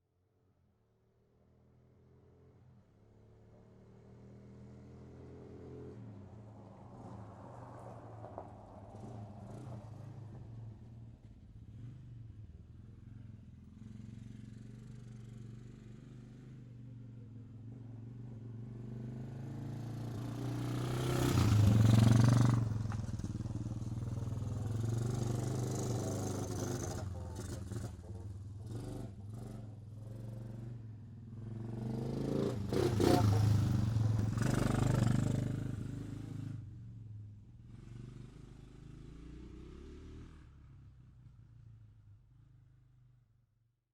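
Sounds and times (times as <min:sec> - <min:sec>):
quad bike engine running: 0:18.6 - 0:36.6.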